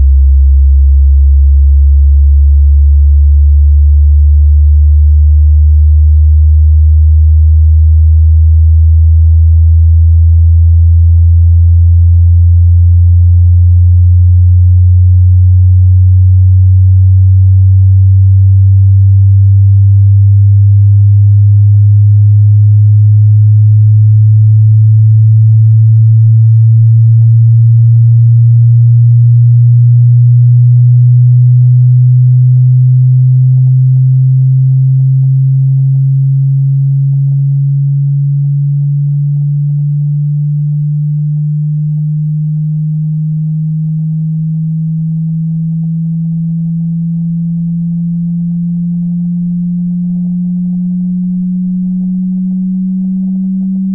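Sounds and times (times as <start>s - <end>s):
low sine tone rising in pitch: 0.0s - 53.9s.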